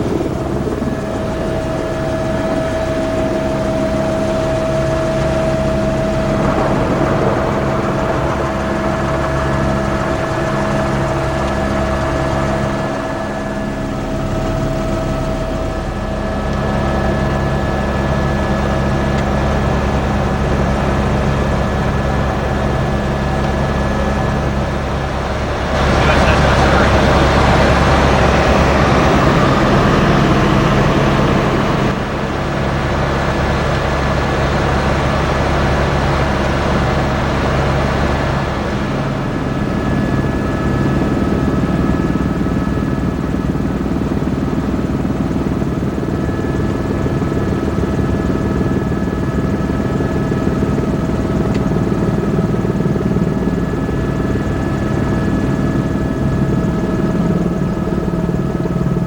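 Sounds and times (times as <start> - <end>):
steady high whine: 0.0 - 24.8, 25.6 - 32.0
helicopter engine and rotor: 0.0 - 59.0.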